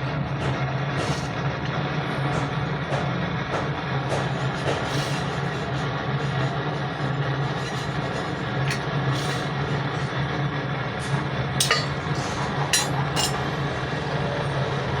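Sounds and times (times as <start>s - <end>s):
sharp metallic clinks: 11.6s - 12.1s
steady low hum: 11.6s - 13.8s.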